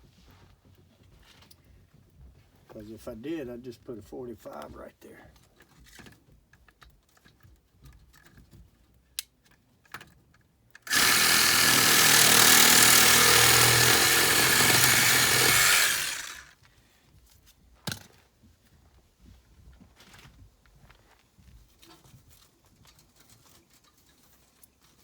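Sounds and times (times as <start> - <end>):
power saw cutting pipe: 10.8 - 16.5.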